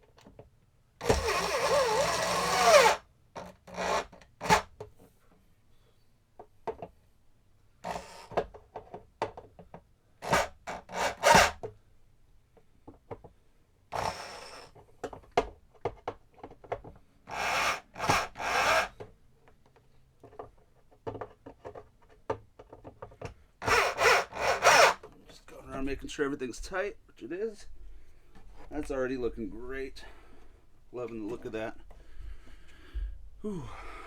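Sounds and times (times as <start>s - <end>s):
screws grinding into wood: 1.0s - 4.8s, 7.8s - 8.4s, 10.2s - 11.7s, 13.9s - 14.8s, 17.3s - 19.0s, 23.6s - 25.1s.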